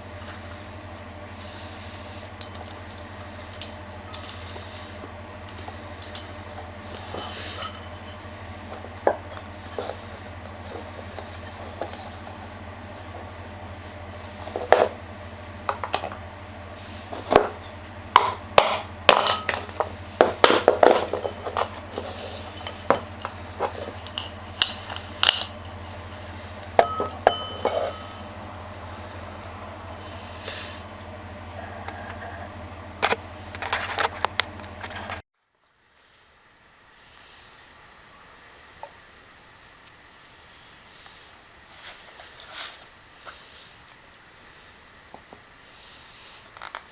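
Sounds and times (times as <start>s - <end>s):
steady low hum: 0.0s - 35.2s
metal tools clinking: 5.5s - 10.0s, 18.6s - 30.9s.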